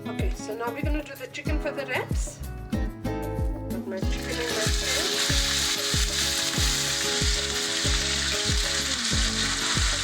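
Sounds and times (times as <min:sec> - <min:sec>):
background music with bass beat: 0:00.0 - 0:10.0
chicken sizzling in hot oil: 0:04.0 - 0:10.0.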